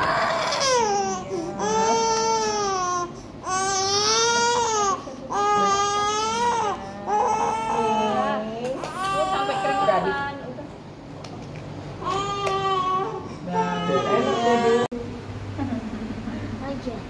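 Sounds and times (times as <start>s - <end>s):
baby crying: 0.0s - 10.2s, 12.0s - 14.9s.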